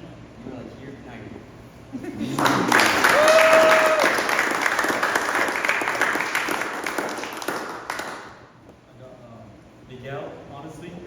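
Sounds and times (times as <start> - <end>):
people applauding: 2.2 - 8.4.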